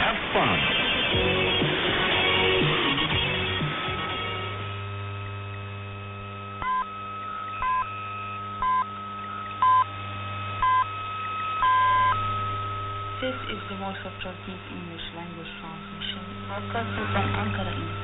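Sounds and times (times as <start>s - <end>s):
radio heterodyne whistle and hum: 0.0s - 18.0s
time signal pips on radio: 6.6s - 14.2s.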